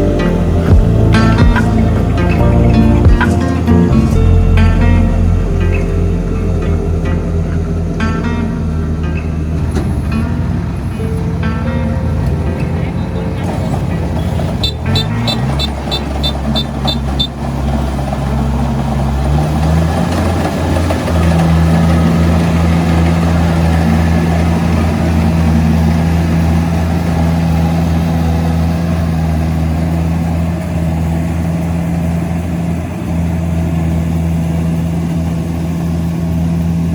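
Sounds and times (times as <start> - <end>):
engine running: 0.0 - 36.9.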